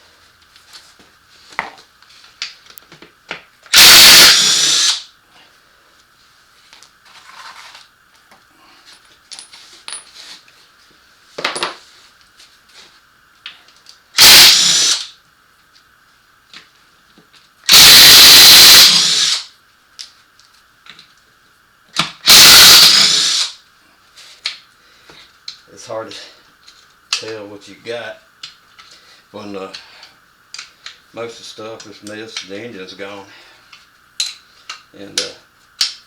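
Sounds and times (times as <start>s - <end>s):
power drill running: 3.7s - 5.0s, 14.2s - 15.1s, 17.7s - 19.5s, 22.2s - 23.6s.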